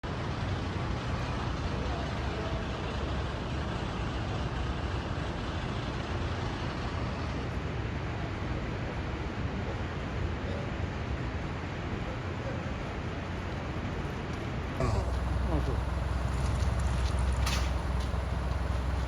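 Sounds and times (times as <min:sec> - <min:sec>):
rushing roar with low rumble: 0:15.0 - 0:19.0.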